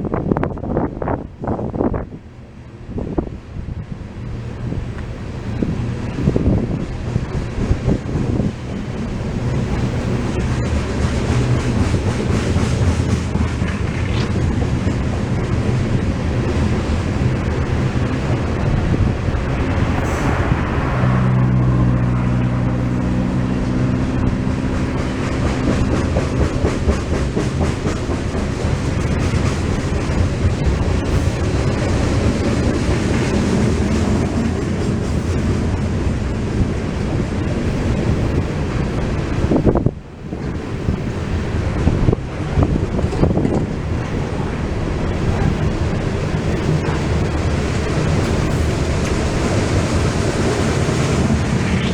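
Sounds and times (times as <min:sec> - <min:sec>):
freight train wheels rumbling: 0:00.0 - 0:51.9.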